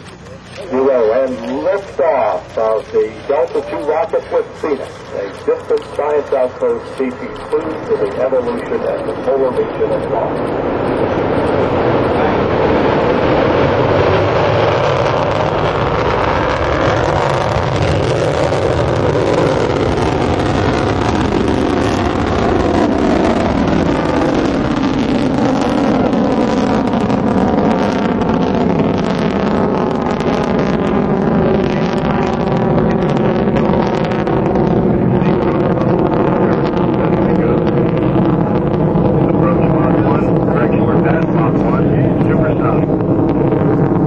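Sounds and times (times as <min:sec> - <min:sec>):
rocket engines roaring: 0:00.0 - 0:44.0.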